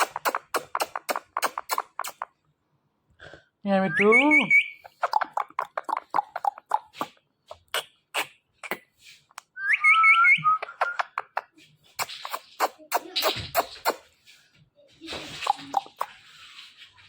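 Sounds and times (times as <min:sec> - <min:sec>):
parrot chattering: 0:00.0 - 0:02.4, 0:04.0 - 0:08.9, 0:09.8 - 0:14.1, 0:15.3 - 0:16.3
parrot clicking: 0:00.0 - 0:02.4, 0:04.9 - 0:07.2, 0:15.4 - 0:16.2
parrot whistling: 0:03.9 - 0:05.2, 0:09.5 - 0:11.3.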